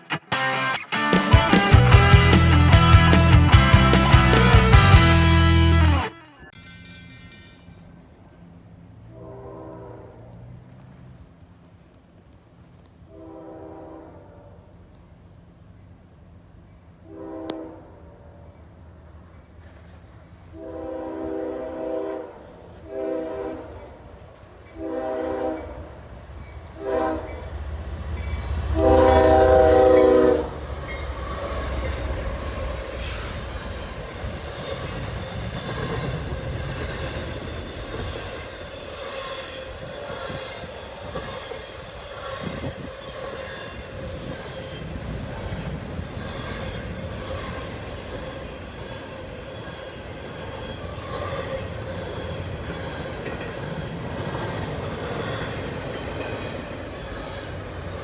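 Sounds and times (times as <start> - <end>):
train wheels rumbling on rail: 1.7 - 5.7, 6.6 - 58.0
locomotive air horn blasts: 9.1 - 10.4, 13.1 - 14.6, 17.0 - 18.2, 20.5 - 24.0, 24.8 - 25.9, 26.8 - 27.5, 28.2 - 30.6.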